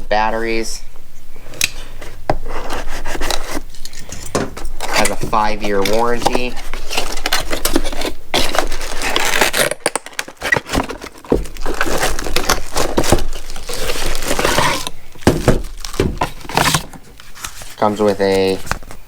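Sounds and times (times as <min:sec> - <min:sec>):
packaging crinkling and tearing: 0:04.8 - 0:19.0.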